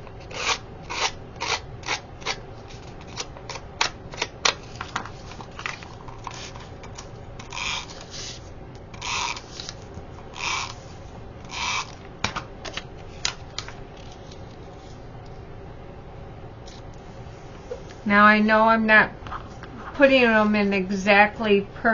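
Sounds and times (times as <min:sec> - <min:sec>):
tool scraping paper edge: 0:00.2 - 0:04.3, 0:07.4 - 0:09.8, 0:10.4 - 0:10.8, 0:11.5 - 0:12.0.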